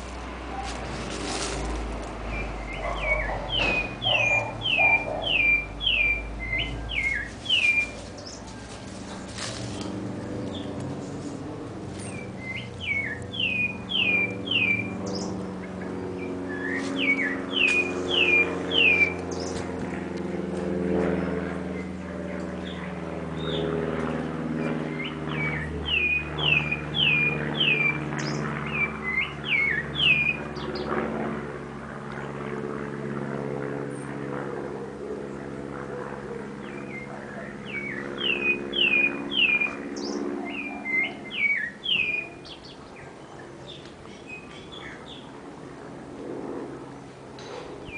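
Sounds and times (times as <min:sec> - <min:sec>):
steady low hum: 0:00.0 - 0:47.9
thrush singing whistled notes: 0:02.3 - 0:08.4, 0:12.0 - 0:15.3, 0:16.4 - 0:19.4, 0:25.0 - 0:30.5, 0:36.8 - 0:42.8.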